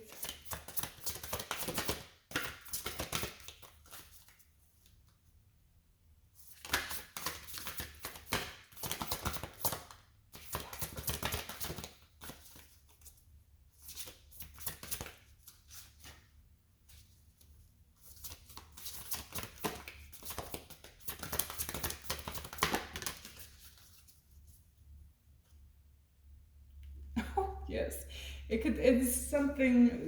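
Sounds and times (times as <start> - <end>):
cards being shuffled: 0.1 - 5.0, 6.5 - 13.2, 13.8 - 16.3, 18.0 - 24.2.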